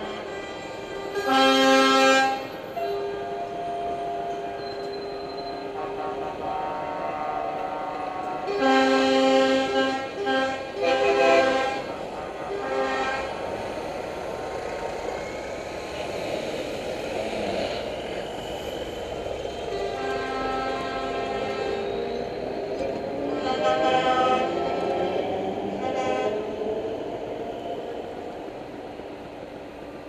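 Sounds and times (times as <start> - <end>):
multi-tone air horns: 0.0 - 4.5, 5.6 - 13.5, 19.8 - 22.0, 23.2 - 26.6.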